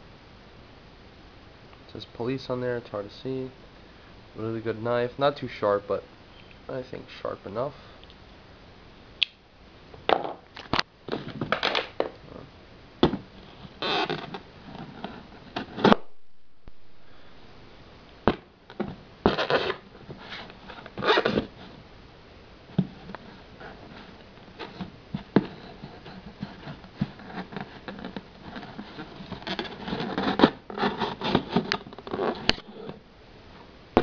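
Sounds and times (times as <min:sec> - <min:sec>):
scratching and rubbing: 0:13.4 - 0:16.0, 0:18.8 - 0:21.8, 0:22.8 - 0:33.0.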